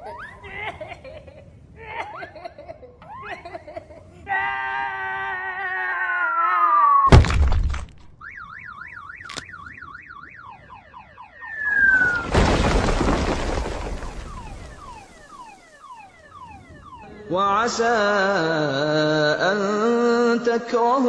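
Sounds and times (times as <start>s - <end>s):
loud crash: 7.1s - 8.1s, 11.5s - 15.7s
repeated falling whistles: 8.2s - 17.2s
fast warbling alarm tone: 8.2s - 18.2s.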